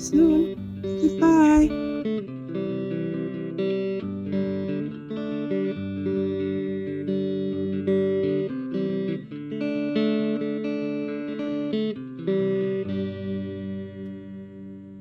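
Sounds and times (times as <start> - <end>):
plucked guitar music: 0.0 - 15.0.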